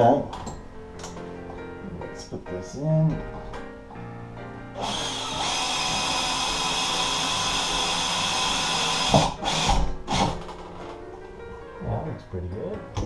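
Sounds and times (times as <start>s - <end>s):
power drill driving screw: 4.8s - 10.5s.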